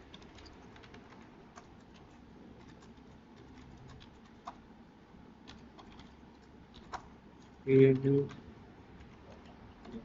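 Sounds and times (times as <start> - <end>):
keyboard keys typing: 0.0 - 4.6, 5.4 - 10.0.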